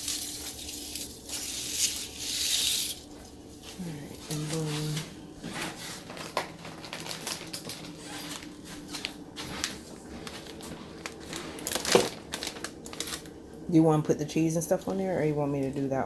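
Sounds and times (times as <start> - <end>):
utensils clicking and scraping: 0.0 - 3.2
steady low hum: 0.0 - 16.0.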